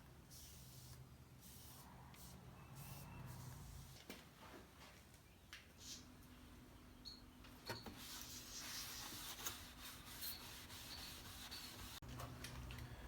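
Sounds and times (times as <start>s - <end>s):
faint rubbing on wood: 8.0s - 12.1s.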